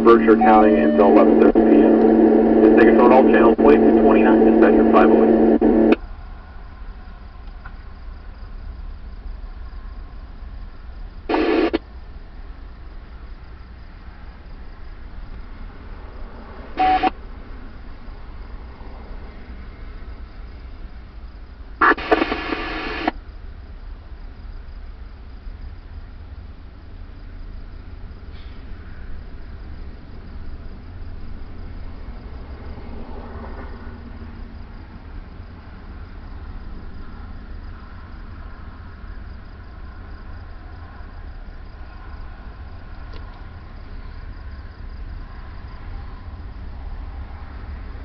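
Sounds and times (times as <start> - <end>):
radio hiss and hum: 0.0 - 6.0, 11.3 - 11.8, 16.8 - 17.2, 21.8 - 23.2
radio squelch bursts: 0.0 - 6.0, 11.3 - 11.8, 16.8 - 17.1, 21.8 - 23.1.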